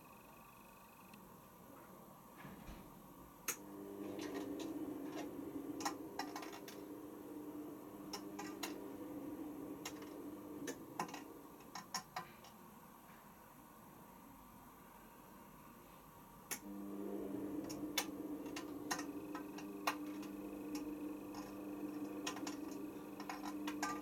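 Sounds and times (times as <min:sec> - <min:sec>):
washing machine motor humming: 0:03.1 - 0:13.0, 0:16.5 - 0:24.0.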